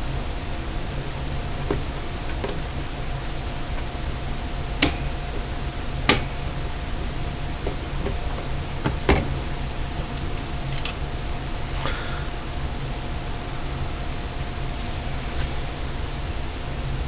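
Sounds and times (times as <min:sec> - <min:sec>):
steady low hum: 0:00.0 - 0:17.0
sharp clicks of hard parts: 0:04.8 - 0:05.1, 0:10.1 - 0:11.0.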